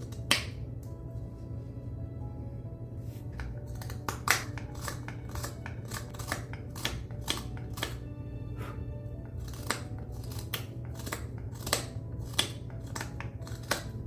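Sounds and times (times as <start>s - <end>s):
carving tool slicing wood: 3.4s - 8.0s, 9.2s - 14.0s.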